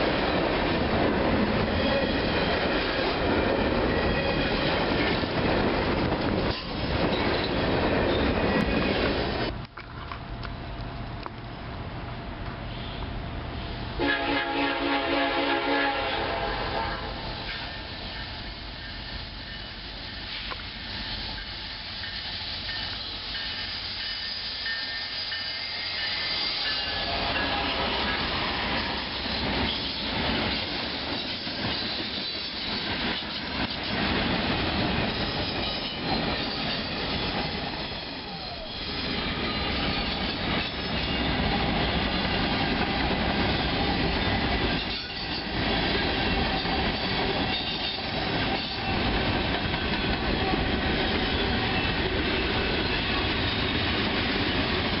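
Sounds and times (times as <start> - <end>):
train wheels clicking over rail joints: 17.4 - 55.0
high wheel squeal: 17.5 - 33.6, 34.8 - 42.6.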